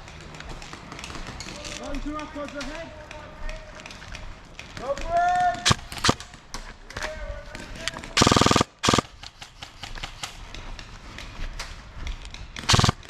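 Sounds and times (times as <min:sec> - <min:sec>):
faint scattered shots: 0:04.8 - 0:10.4, 0:12.6 - 0:13.0
airsoft gun full-auto bursts: 0:05.6 - 0:06.3, 0:08.2 - 0:09.6, 0:12.6 - 0:13.0.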